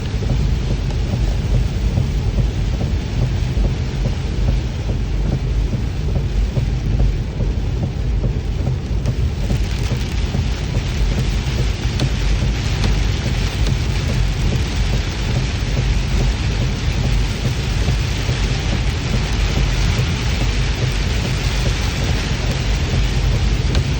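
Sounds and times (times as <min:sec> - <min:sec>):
low rumble: 0:00.0 - 0:23.9
steady rain falling: 0:00.0 - 0:23.9.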